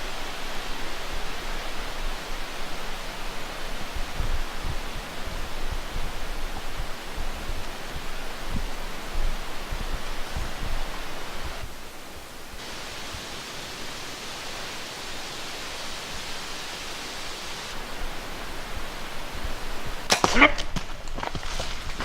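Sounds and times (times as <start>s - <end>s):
woodland ambience hiss: 0.0s - 22.0s
sharp rustle: 18.8s - 22.0s.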